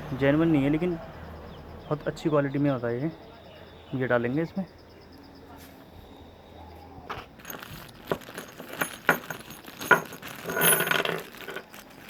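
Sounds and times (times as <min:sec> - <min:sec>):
steel bearing parts clinking: 0:07.2 - 0:12.0
metallic rattle: 0:07.4 - 0:12.0.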